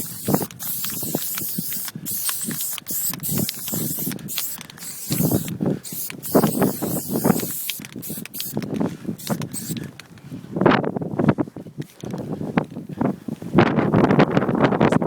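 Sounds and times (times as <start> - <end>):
spray paint can hissing: 0.0 - 9.8.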